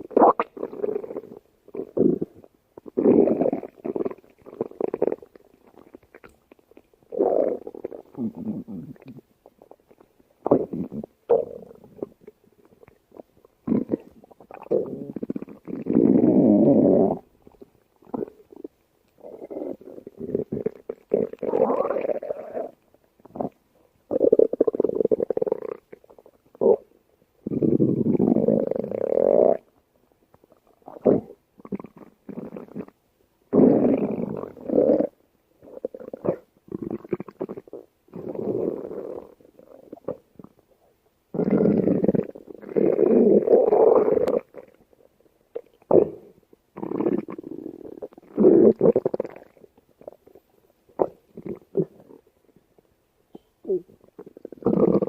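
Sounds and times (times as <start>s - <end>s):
stomach growling: 0.0s - 29.7s, 30.3s - 40.7s, 41.3s - 55.0s.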